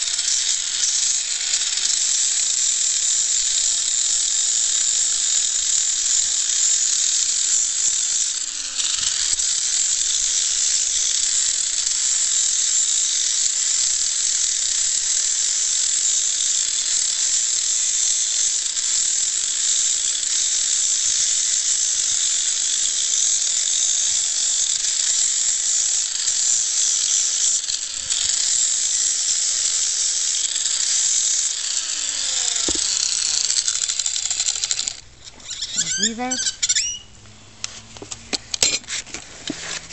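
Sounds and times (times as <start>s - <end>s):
electric grinder sanding hoof: 0.0s - 39.9s.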